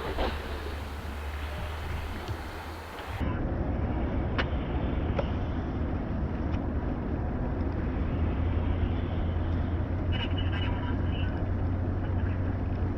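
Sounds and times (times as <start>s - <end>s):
faint ticks: 0.0s - 3.2s
vehicle driving rumble: 0.0s - 3.3s.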